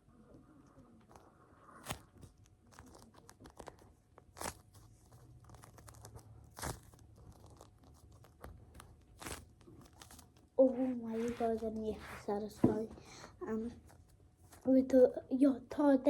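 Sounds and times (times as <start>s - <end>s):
squishy toy crinkling: 0.8s - 14.7s.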